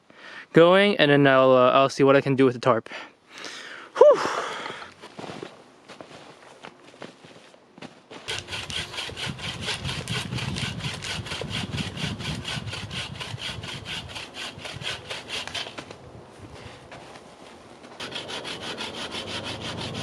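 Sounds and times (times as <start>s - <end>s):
hand saw cutting wood: 8.3s - 15.9s, 18.0s - 20.0s.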